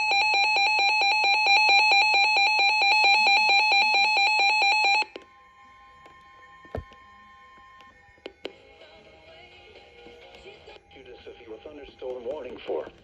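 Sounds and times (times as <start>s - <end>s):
rapid electronic alarm beeps: 0.0s - 5.1s.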